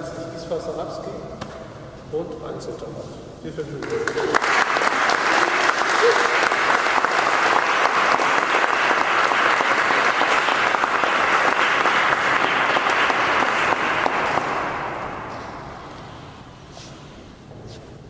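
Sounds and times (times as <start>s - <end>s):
audience applauding: 3.8s - 16.6s.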